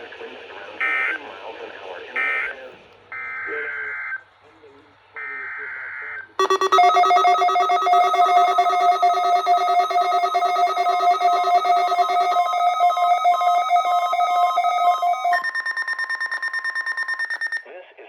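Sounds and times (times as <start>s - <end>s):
rapidly pulsing electronic alert chord: 6.4s - 17.6s.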